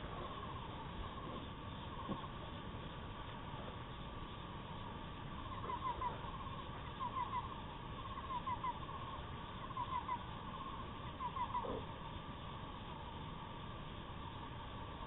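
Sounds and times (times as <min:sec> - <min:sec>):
steady background drone: 0:00.0 - 0:15.0.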